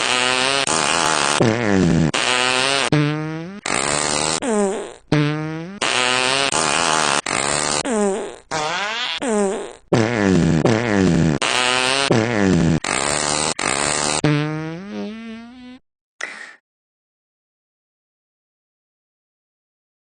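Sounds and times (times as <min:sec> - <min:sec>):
buzzy fart noises: 0:00.0 - 0:15.8.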